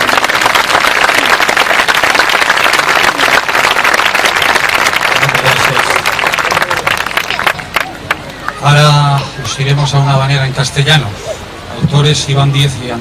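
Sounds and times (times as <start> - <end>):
audience applauding: 0.0 - 9.2.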